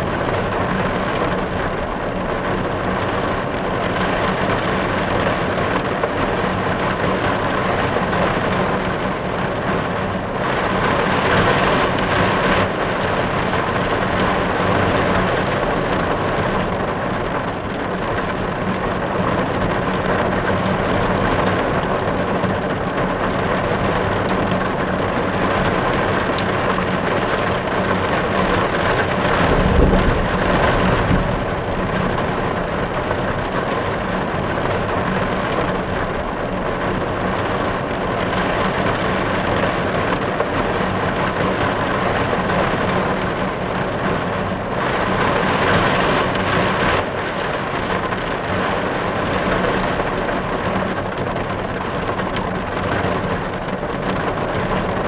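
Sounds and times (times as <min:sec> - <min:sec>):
rain drumming on car roof: 0:00.0 - 0:55.0
deep rumble: 0:28.7 - 0:34.7.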